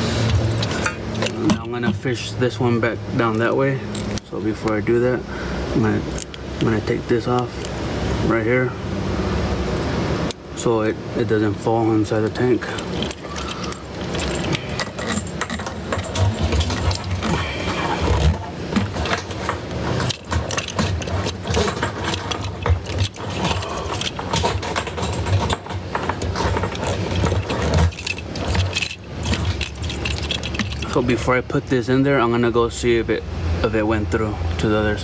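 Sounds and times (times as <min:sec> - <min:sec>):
plastic and metal parts rattling: 0:00.2 - 0:02.3, 0:03.2 - 0:04.8, 0:12.3 - 0:31.2.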